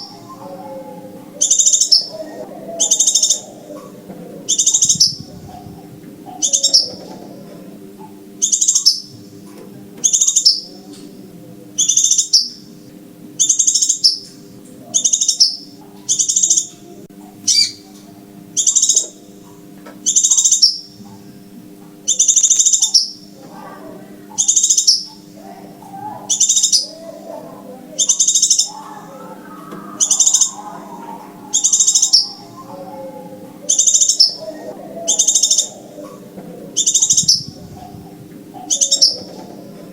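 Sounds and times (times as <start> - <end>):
bird chirping: 0.0 - 7.4, 8.4 - 9.2, 10.0 - 10.8, 11.8 - 12.6, 15.0 - 16.8, 17.5 - 17.8, 18.6 - 19.2, 20.0 - 20.9, 22.1 - 23.3, 24.3 - 39.9
faint low hum: 0.0 - 39.9.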